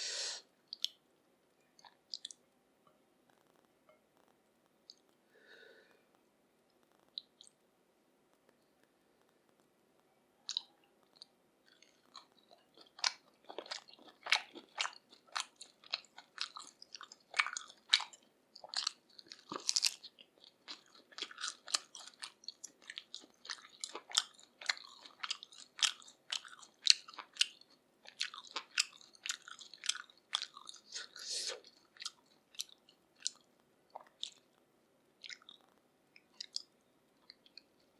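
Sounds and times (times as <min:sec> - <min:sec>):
wet chewing mouth clicks: 0:00.7 - 0:01.0, 0:01.8 - 0:02.4, 0:07.0 - 0:07.6, 0:10.5 - 0:34.5, 0:35.2 - 0:37.8
food crunch: 0:10.5 - 0:34.5, 0:35.2 - 0:37.7.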